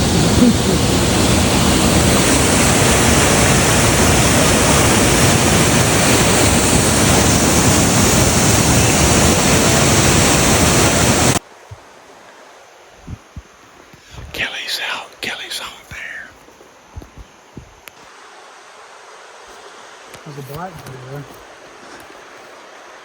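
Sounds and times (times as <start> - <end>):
waterfall roaring: 0.0 - 11.4.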